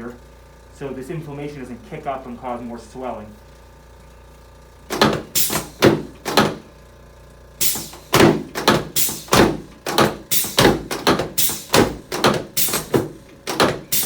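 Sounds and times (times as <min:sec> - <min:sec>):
treatment table thuds: 0:04.9 - 0:06.7, 0:07.6 - 0:14.0.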